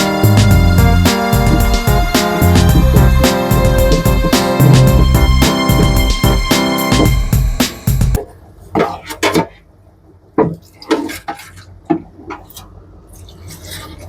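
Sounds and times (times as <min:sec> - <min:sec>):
music: 0:00.0 - 0:08.2.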